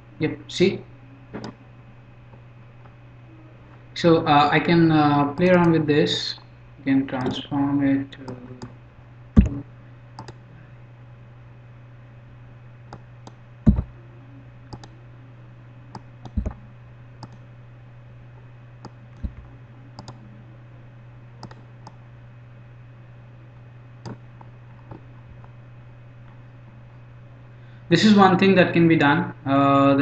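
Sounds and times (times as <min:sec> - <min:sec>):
steady low hum: 0:00.0 - 0:30.0
computer mouse clicking: 0:10.2 - 0:10.4, 0:14.7 - 0:15.0, 0:15.9 - 0:16.6, 0:17.2 - 0:17.4, 0:18.8 - 0:20.2, 0:21.4 - 0:22.0.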